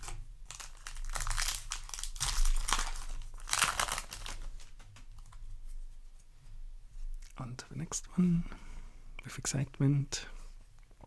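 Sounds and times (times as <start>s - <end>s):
foil wrapper crinkling: 0.0s - 5.5s.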